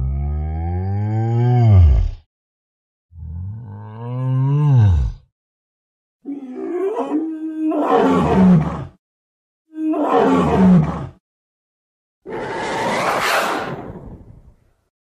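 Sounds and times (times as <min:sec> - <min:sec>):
dinosaur roar: 0:00.0 - 0:02.2, 0:03.2 - 0:05.3, 0:06.2 - 0:09.0, 0:09.8 - 0:11.2, 0:12.3 - 0:14.3.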